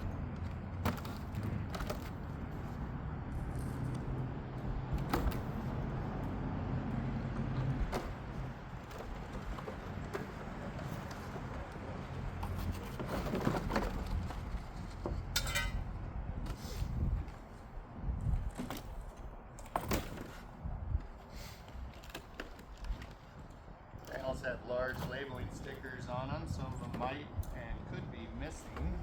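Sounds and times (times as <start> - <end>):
plastic panels and cardboard handled: 0.0 - 2.8
wind rumble on microphone: 13.6 - 19.6, 20.3 - 22.0, 22.6 - 29.0.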